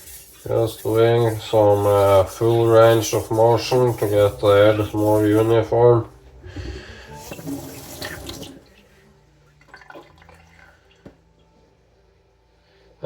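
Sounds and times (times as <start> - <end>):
blade swishing on wet whetstone: 0.0 - 5.8.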